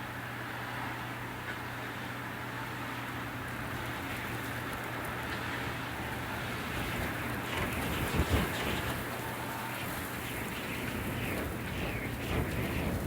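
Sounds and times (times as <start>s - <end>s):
low wind buffet: 3.5s - 13.0s.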